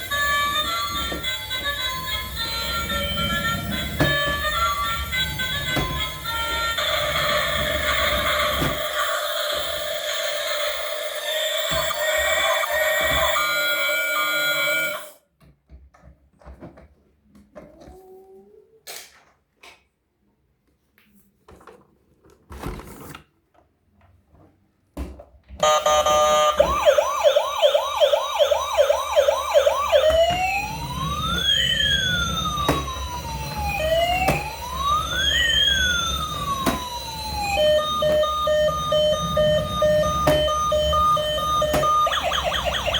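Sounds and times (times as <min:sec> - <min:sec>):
toy siren: 0:00.0 - 0:15.2, 0:25.6 - 0:42.9.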